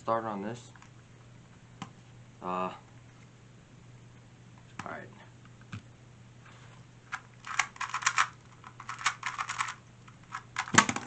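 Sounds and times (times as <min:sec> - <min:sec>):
speed cube clacking turns: 0:07.1 - 0:11.0.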